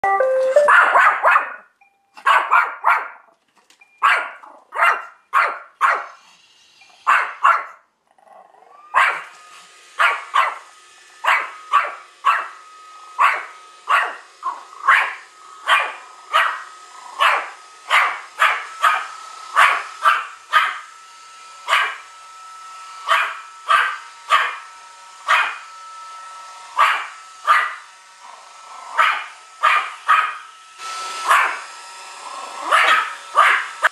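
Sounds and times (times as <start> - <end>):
small dog barking: 0.6 - 3.2, 4.0 - 6.2, 7.0 - 7.8, 8.9 - 9.3, 10.0 - 10.6, 11.2 - 12.6, 13.2 - 16.6, 17.2 - 20.8, 21.7 - 22.0, 23.1 - 24.6, 25.3 - 25.6, 26.8 - 27.8, 29.0 - 30.4, 31.2 - 31.6, 32.6 - 33.8
robot vacuum whirring: 8.7 - 33.9.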